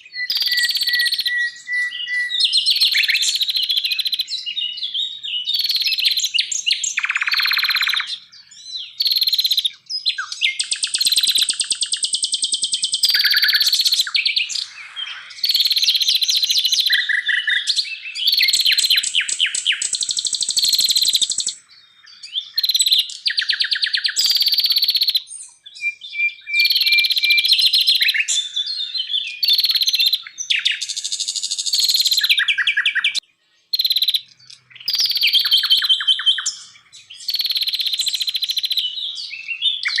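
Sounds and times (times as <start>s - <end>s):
songbird whistles and trills: 0.0s - 40.0s.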